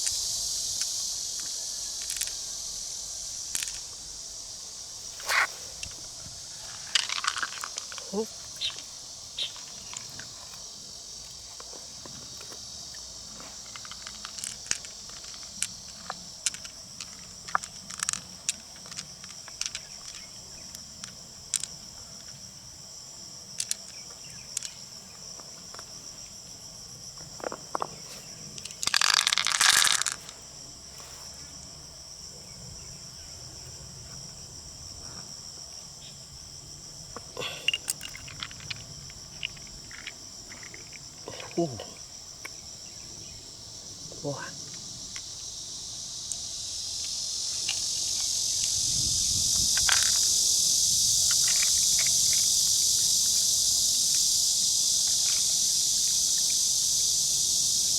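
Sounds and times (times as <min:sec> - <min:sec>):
mussel shells clicking and crunching: 0:00.0 - 0:04.1, 0:05.1 - 0:22.4, 0:23.4 - 0:25.9, 0:27.2 - 0:30.4, 0:37.2 - 0:42.6, 0:46.3 - 0:54.2, 0:54.8 - 0:56.6
crickets chirping: 0:00.0 - 0:57.9.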